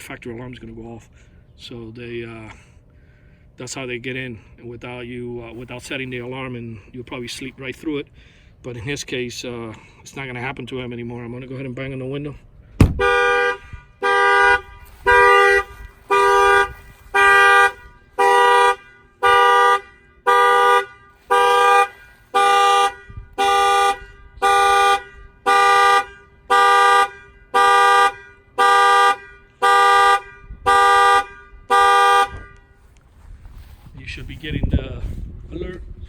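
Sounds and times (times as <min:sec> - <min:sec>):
truck horn alarm pulses: 0:12.8 - 0:33.0.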